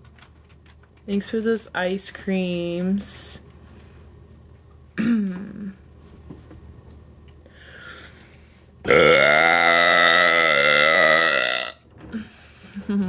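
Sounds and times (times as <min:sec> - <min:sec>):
woman belching: 0:08.9 - 0:11.8.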